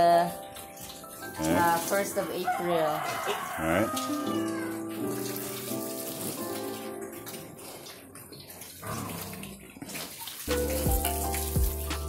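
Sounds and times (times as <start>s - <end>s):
background music with held notes: 0.0s - 8.1s, 10.5s - 12.0s.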